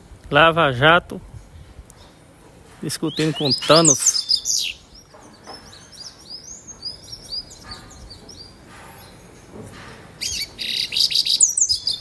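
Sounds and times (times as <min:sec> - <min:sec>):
birds chirping and singing: 0:02.8 - 0:12.0.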